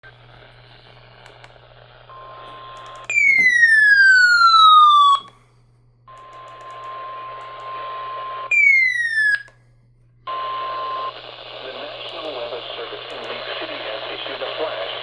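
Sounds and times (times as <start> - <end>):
loud tone sliding downward: 3.1 - 5.3, 8.5 - 9.5
steady alarm tone: 3.1 - 5.3, 8.5 - 9.5
radio static hiss: 10.5 - 15.0.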